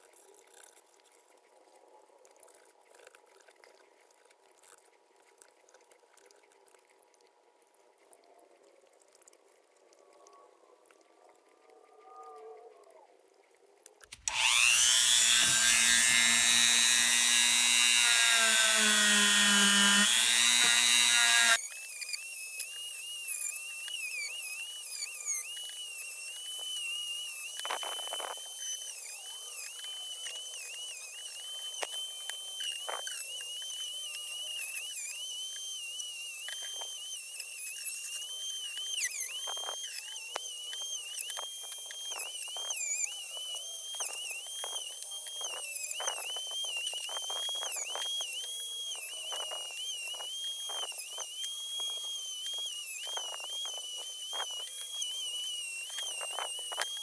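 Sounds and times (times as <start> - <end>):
power tool running loudly: 14.1 - 23.3, 24.3 - 33.1.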